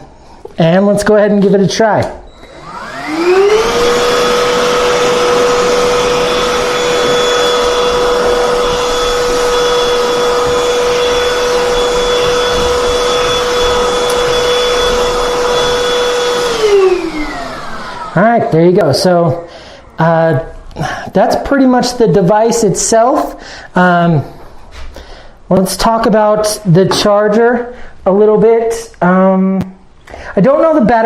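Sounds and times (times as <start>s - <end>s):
handheld vacuum motor whine: 2.3s - 18.3s.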